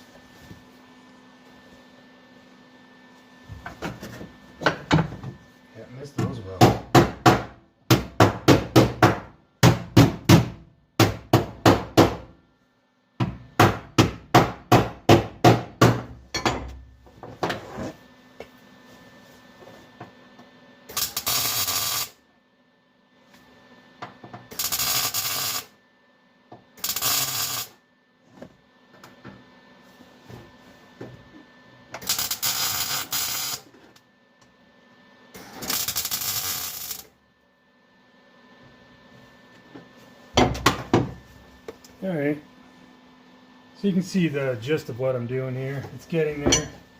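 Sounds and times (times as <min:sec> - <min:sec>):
welding crackle: 0:20.9 - 0:22.2, 0:24.5 - 0:25.7, 0:26.8 - 0:27.8, 0:32.0 - 0:33.7, 0:35.4 - 0:37.1.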